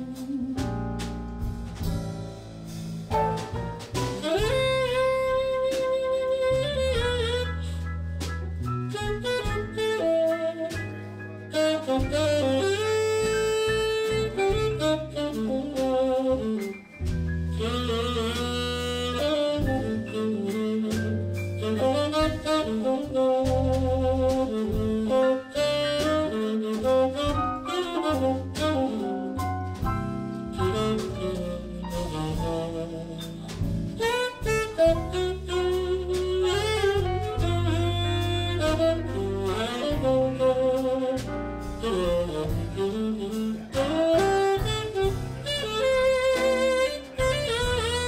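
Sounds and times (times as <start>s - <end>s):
drums: 0.0s - 48.0s
lead instrument bending melody: 0.0s - 48.0s
walking bass line: 0.0s - 48.0s.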